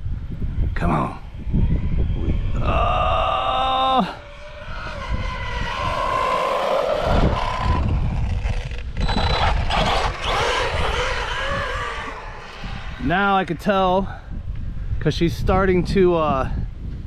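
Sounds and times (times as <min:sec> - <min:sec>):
wind rumble on microphone: 0:00.0 - 0:17.0
electric motor whining: 0:01.4 - 0:14.6.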